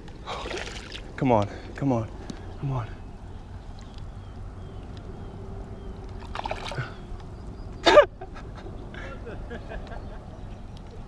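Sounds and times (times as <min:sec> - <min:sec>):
water splashing and trickling: 0:00.0 - 0:01.7, 0:06.0 - 0:07.2.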